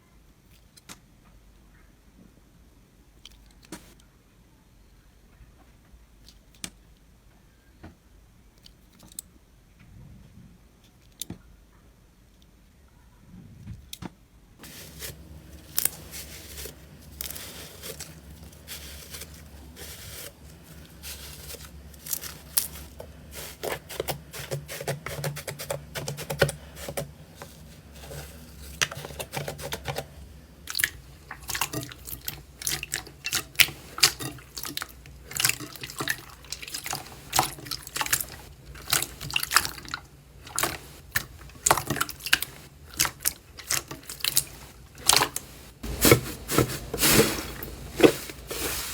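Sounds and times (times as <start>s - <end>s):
steady low hum: 14.4s - 48.9s.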